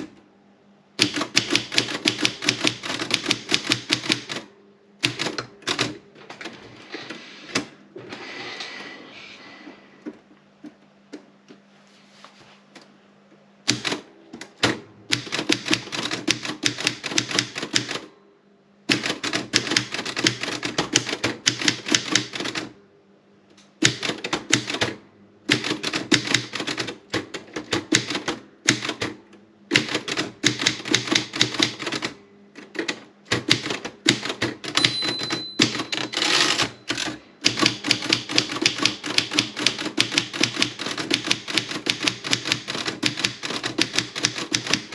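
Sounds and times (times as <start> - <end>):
typewriter keystrokes: 1.0 - 6.6, 13.7 - 18.1, 18.9 - 22.7, 23.8 - 44.9
typewriter bell ring: 34.8 - 37.1.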